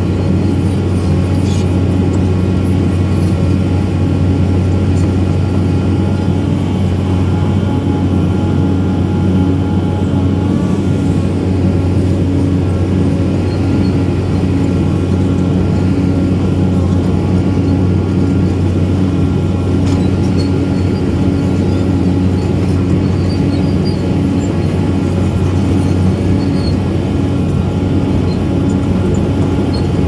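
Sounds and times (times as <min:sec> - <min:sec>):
excavator diesel engine droning: 0:00.0 - 0:30.0.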